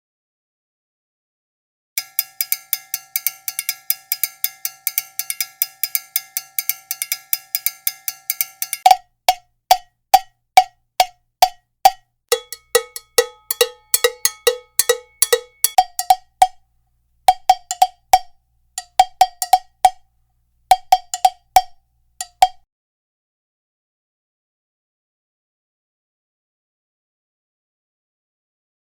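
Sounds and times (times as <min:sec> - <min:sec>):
lower-pitched bell strikes: 0:02.0 - 0:09.0, 0:12.3 - 0:16.3
cowbell strikes: 0:02.0 - 0:16.6, 0:17.3 - 0:20.0, 0:20.7 - 0:22.6.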